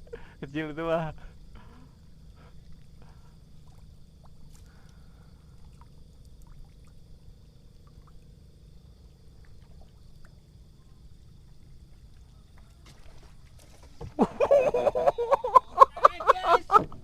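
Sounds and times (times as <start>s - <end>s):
faint water sounds: 0.0s - 17.0s.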